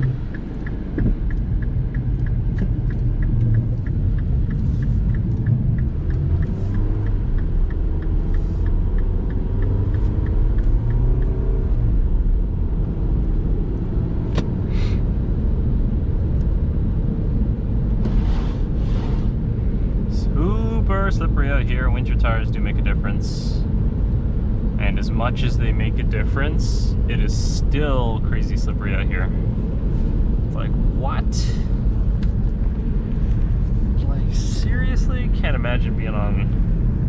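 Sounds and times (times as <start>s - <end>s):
even ticking: 0.0s - 12.2s
car engine and road rumble: 0.0s - 37.0s.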